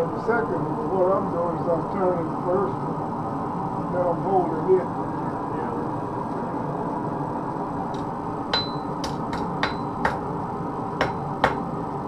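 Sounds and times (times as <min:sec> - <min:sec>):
forge background noise: 0:00.0 - 0:12.0
hammer striking metal on anvil: 0:08.5 - 0:10.2, 0:11.0 - 0:11.7.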